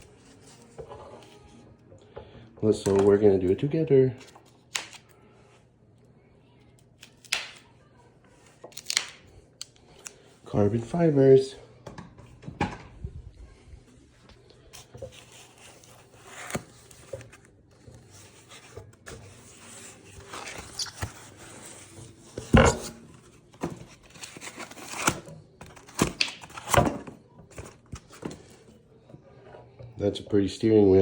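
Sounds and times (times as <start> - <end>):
packaging rustling and tearing: 14.7 - 22.4, 23.2 - 26.9.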